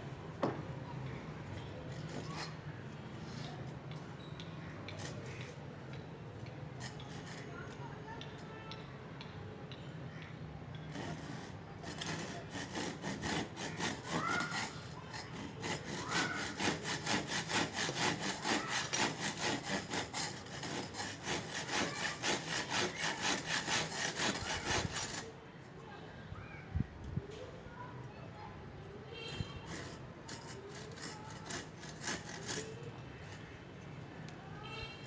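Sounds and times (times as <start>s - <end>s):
hand saw cutting wood: 1.9s - 2.6s, 10.9s - 25.4s, 29.6s - 32.9s.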